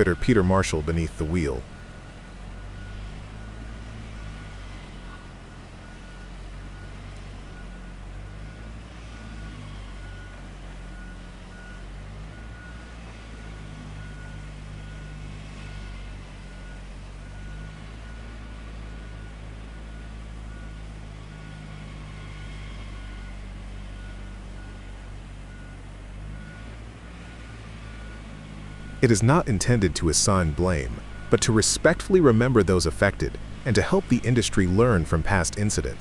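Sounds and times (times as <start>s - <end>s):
reversing alarm beeps: 0.0s - 2.0s, 2.6s - 36.0s
diesel engine running: 0.0s - 36.0s.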